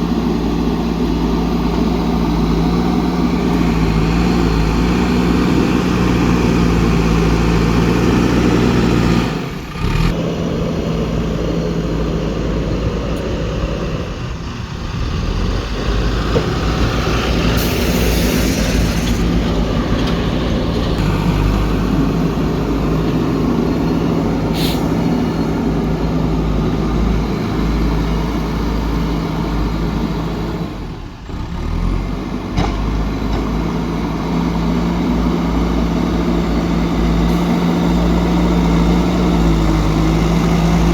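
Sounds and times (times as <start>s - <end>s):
diesel engine under load: 0.0s - 40.9s.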